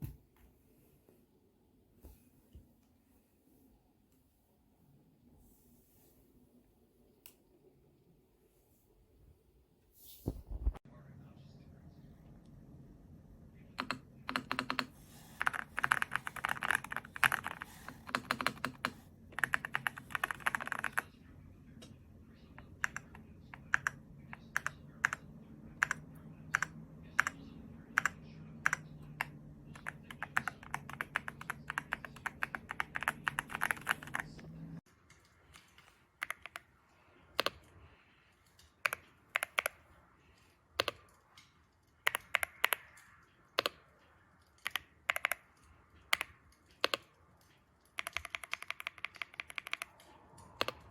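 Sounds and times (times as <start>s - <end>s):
mechanical keyboard typing: 13.8s - 21.1s, 22.6s - 34.4s, 36.2s - 36.7s, 38.8s - 39.8s, 42.0s - 43.0s, 44.6s - 47.2s, 47.8s - 50.9s.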